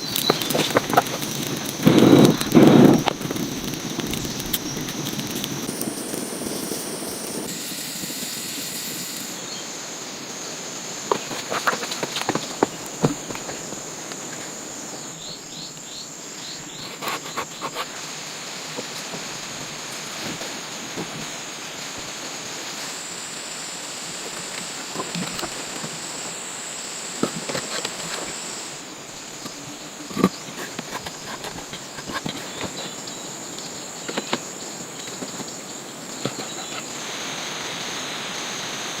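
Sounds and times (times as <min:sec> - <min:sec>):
insects droning: 0:00.0 - 0:39.0
knocks and rustles: 0:11.1 - 0:14.5.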